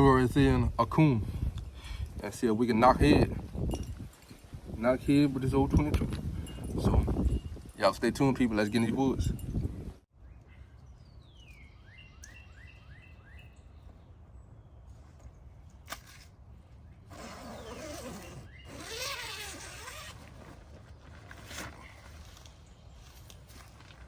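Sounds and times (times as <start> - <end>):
bird whistling and chirping: 10.2 - 13.8, 17.5 - 19.1
rustling through dry leaves: 17.4 - 24.0.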